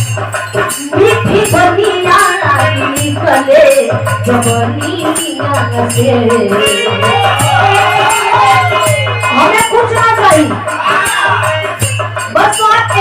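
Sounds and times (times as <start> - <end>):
shaker rattle percussion: 0.0 - 13.0
wavering melody line: 4.3 - 12.4.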